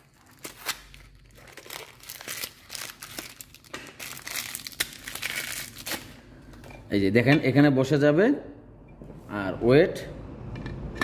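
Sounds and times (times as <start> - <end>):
packaging crinkling: 0.0 - 6.2.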